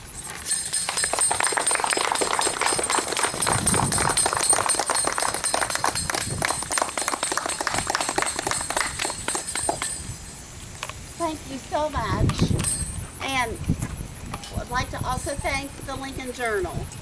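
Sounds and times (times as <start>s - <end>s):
small bells ringing: 0.0s - 13.8s
crowd applauding: 0.7s - 10.0s.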